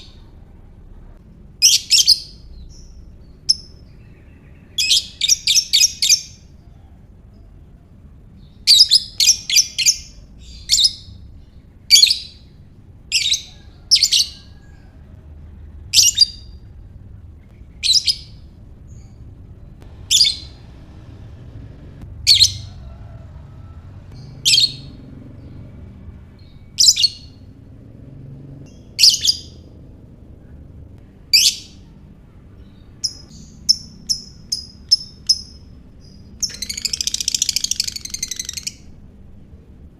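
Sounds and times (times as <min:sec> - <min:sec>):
lovebird shrill calls: 0:33.0 - 0:38.9.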